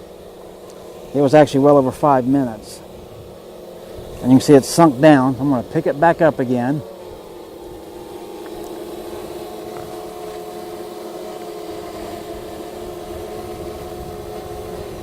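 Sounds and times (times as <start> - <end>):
drone propellers humming: 0.0 - 15.0
wind rumble on microphone: 11.8 - 15.0.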